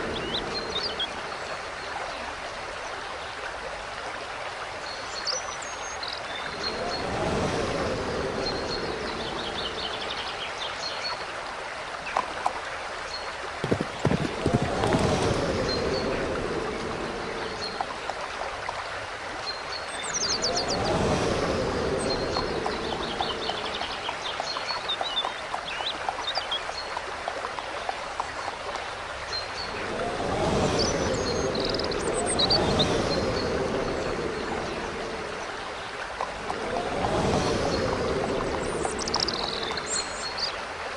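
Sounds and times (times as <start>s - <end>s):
small birds chirping: 0.0s - 1.9s, 29.4s - 40.6s
running water: 0.0s - 40.9s
wavering rising tone: 29.6s - 40.5s.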